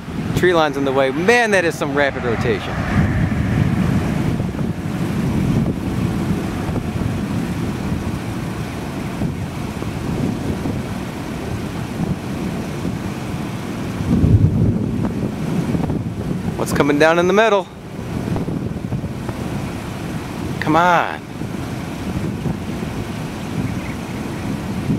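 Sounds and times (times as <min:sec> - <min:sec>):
wind buffeting microphone: 0:00.0 - 0:24.9.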